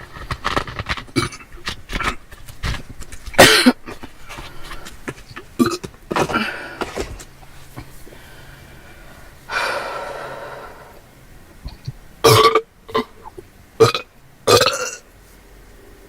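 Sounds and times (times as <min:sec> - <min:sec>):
person making throat sounds: 0:11.7 - 0:15.0.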